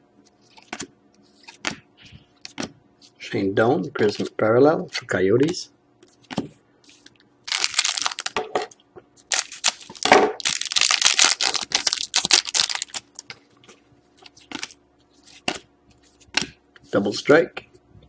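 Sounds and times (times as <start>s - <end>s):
card packaging crinkling: 7.5s - 8.4s, 9.3s - 13.3s.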